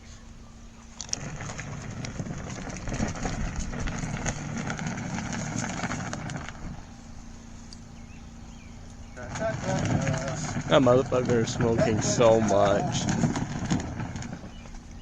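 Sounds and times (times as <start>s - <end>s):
washing machine motor hum: 0.0s - 15.0s
load churning with knocks: 9.1s - 14.9s.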